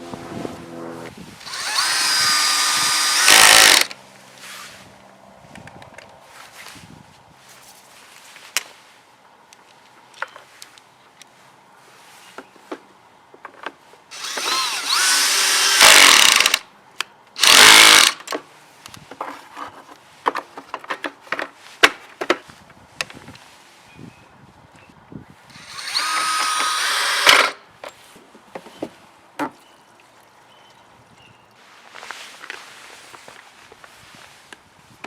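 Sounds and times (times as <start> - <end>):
electric drill spinning: 1.4 - 3.9, 14.1 - 16.6, 17.4 - 18.2, 25.5 - 27.6.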